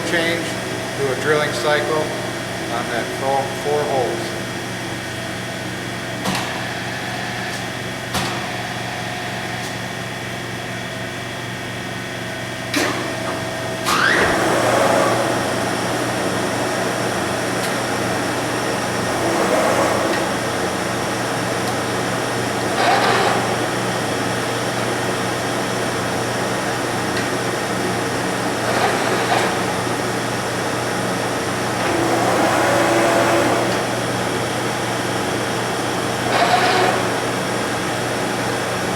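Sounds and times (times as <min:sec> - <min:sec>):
machine tool humming: 0:13.2 - 0:38.9.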